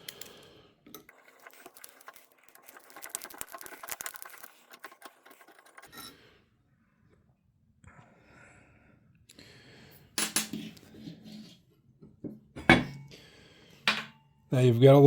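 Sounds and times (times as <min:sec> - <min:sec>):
metal parts clicking and rattling: 0:01.0 - 0:06.0.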